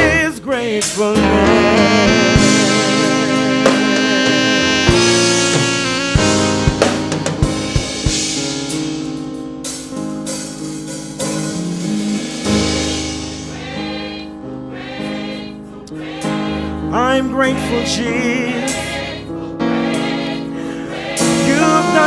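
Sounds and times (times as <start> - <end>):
person singing: 0.0 - 6.6, 15.9 - 22.0
gospel band playing: 0.0 - 22.0
drum kit strikes: 0.8 - 14.3.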